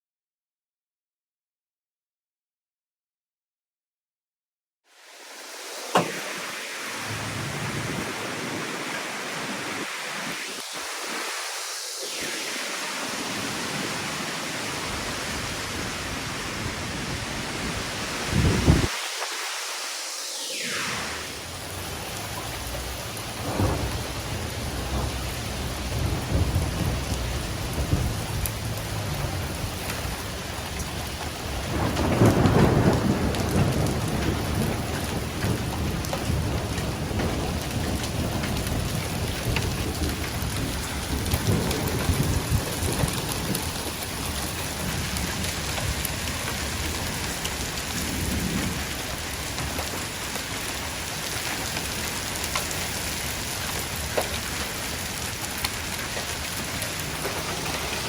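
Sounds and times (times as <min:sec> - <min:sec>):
rain falling: 0:04.9 - 0:58.0
low thunder rumbles: 0:07.0 - 0:09.8, 0:14.8 - 0:18.9, 0:20.8 - 0:52.2.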